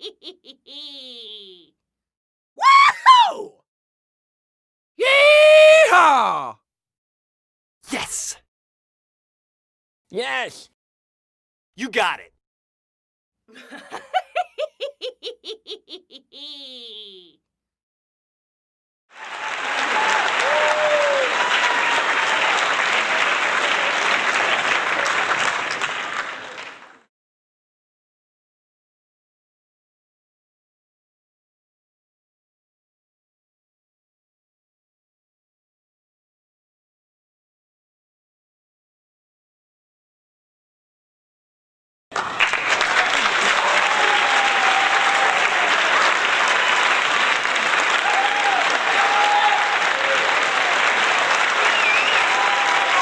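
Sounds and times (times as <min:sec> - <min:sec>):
faint cheering voices: 0:05.0 - 0:06.5, 0:19.2 - 0:22.7, 0:42.8 - 0:46.9, 0:47.9 - 0:53.0
crowd clapping: 0:05.1 - 0:06.5, 0:19.1 - 0:27.1, 0:42.1 - 0:53.0.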